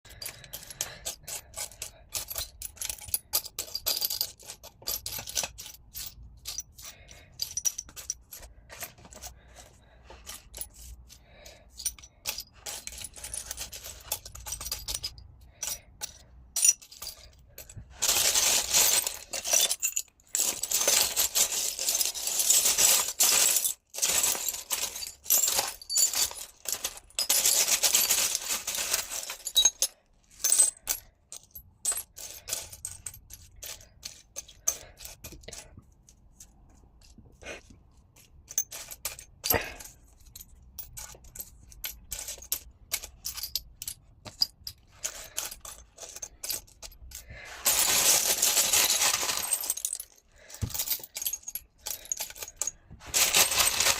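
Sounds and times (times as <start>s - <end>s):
glass pieces clinking and rattling: 0.1s - 35.8s, 38.2s - 53.9s.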